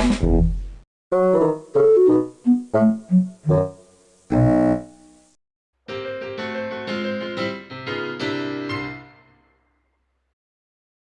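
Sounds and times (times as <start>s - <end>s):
piano phrase: 5.9s - 9.6s.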